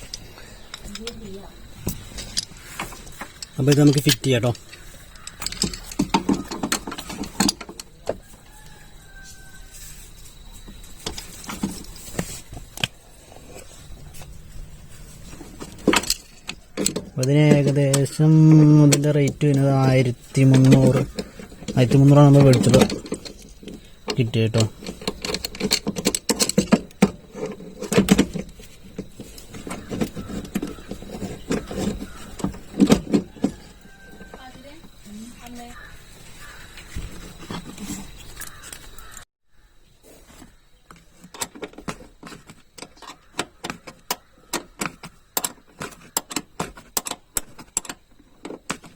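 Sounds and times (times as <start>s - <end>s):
clicks and knocks of tools: 1.9s - 8.2s, 15.6s - 19.7s, 20.4s - 33.6s, 40.9s - 48.9s.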